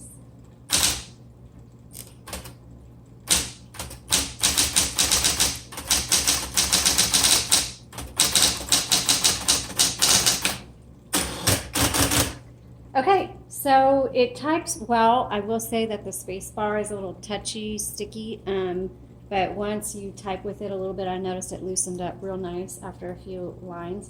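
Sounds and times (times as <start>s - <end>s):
typewriter key strikes: 0.7s - 1.1s, 3.3s - 10.6s
typewriter motor hum: 0.7s - 1.2s, 1.9s - 2.6s, 3.2s - 12.4s.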